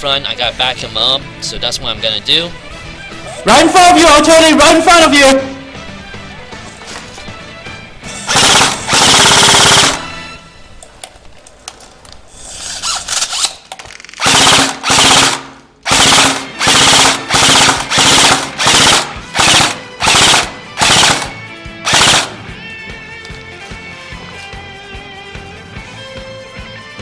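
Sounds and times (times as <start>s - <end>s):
quiet background music: 0.0s - 11.4s, 14.4s - 27.0s
airsoft rifle firing bursts: 8.3s - 10.2s, 14.2s - 22.4s.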